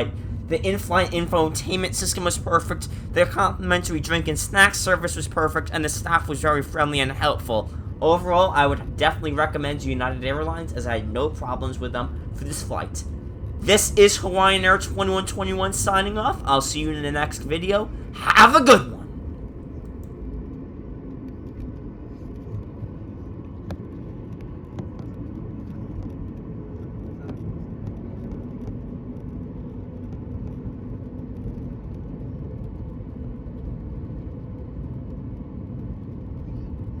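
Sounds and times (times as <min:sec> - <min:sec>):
low vehicle rumble: 0:00.0 - 0:19.9
faint hum: 0:00.0 - 0:26.8.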